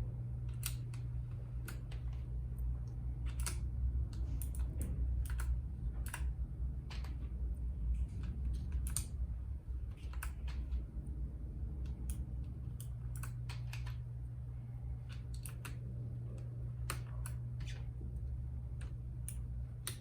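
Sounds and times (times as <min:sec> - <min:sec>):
steady low hum: 0:00.0 - 0:20.0
mechanical keyboard key clicks: 0:00.5 - 0:01.0.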